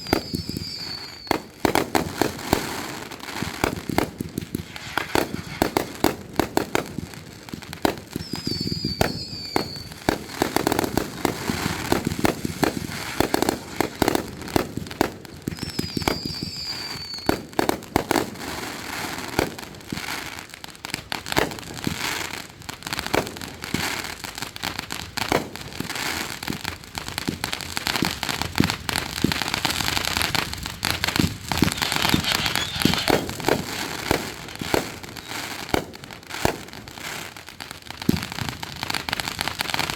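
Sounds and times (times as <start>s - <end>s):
falling firework whistle: 0.0s - 1.8s, 3.4s - 6.2s, 8.0s - 14.2s, 15.4s - 17.6s, 31.1s - 35.8s
fireworks bangs and crackling: 0.0s - 39.9s.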